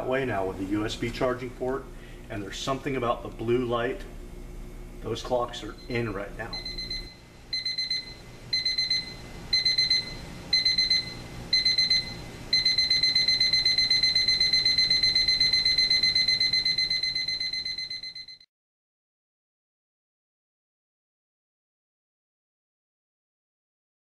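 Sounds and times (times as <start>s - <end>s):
alarm clock beeping: 5.8s - 18.5s.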